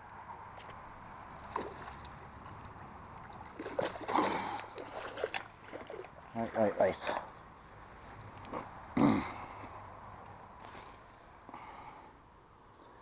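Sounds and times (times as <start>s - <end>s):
fish splashing in water: 1.1s - 7.4s.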